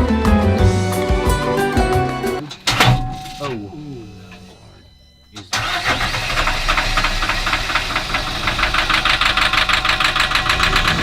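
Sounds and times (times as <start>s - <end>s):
diesel engine running with knock: 6.4s - 11.0s.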